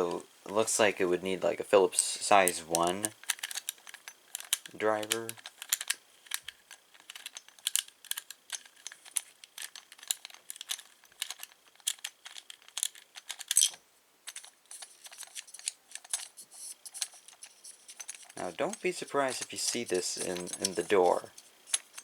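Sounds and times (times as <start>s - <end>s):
screwdriver clicking and scraping screws: 3.2s - 18.4s, 19.7s - 22.0s.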